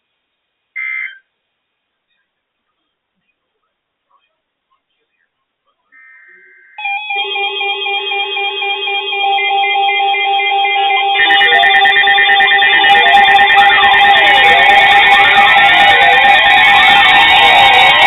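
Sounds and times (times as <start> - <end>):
electronic alarm tones beeping: 6.8 - 18.0
radio data burst: 10.8 - 18.0.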